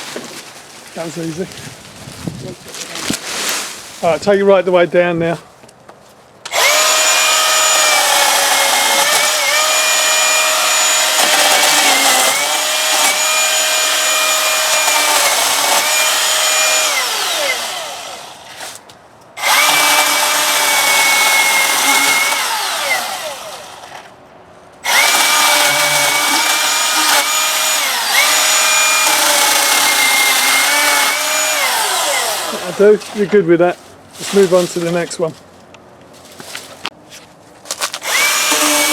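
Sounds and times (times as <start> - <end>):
chainsaw cutting wood: 6.5 - 18.5, 19.4 - 24.1, 24.8 - 33.0, 37.9 - 38.9.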